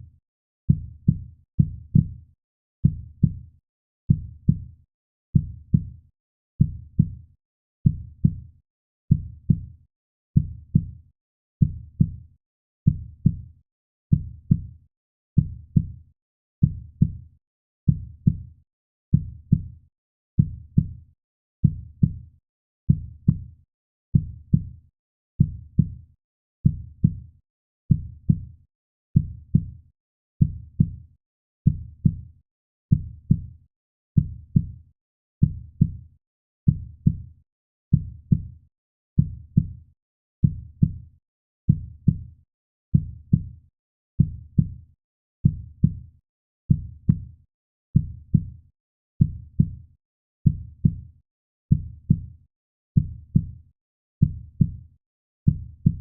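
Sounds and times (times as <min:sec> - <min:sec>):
heartbeat: 0:44.2 - 0:44.7, 0:46.7 - 0:47.2, 0:50.5 - 0:50.9, 0:51.7 - 0:52.2, 0:53.0 - 0:53.4, 0:54.2 - 0:54.7, 0:55.5 - 0:56.0.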